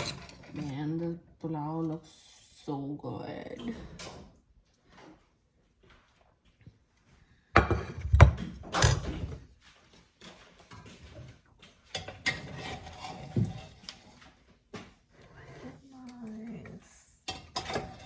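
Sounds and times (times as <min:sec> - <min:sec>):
utensils and dishes clattering: 0:00.0 - 0:01.0, 0:10.1 - 0:16.5, 0:17.2 - 0:18.0
knocks and scraping: 0:07.6 - 0:18.0.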